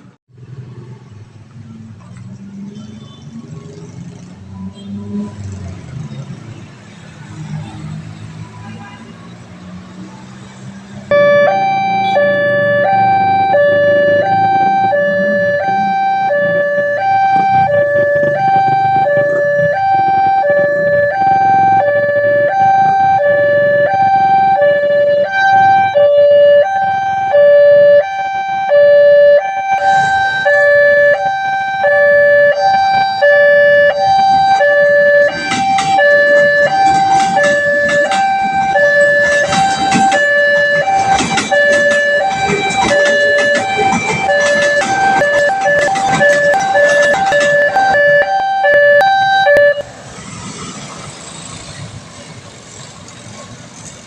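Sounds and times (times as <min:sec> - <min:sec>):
level crossing two-tone alarm: 0:11.1 - 0:49.9.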